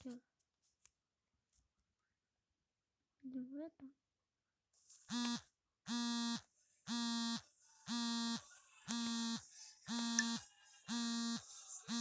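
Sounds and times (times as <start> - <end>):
alarm clock buzzing: 5.1 - 12.0.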